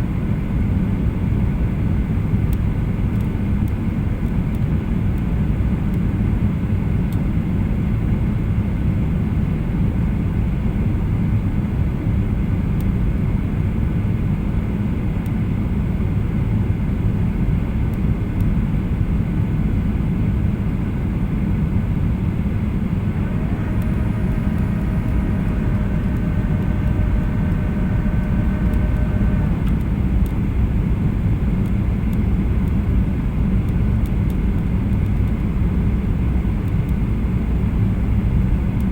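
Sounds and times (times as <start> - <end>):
airplane cabin engine rumble: 0.0 - 38.9
faint steady tones: 22.8 - 30.8.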